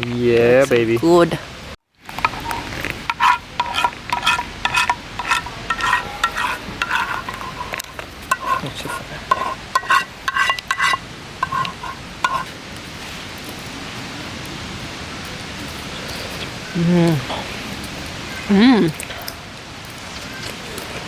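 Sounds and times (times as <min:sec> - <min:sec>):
metal spoon stirring in pot: 0:02.1 - 0:12.5.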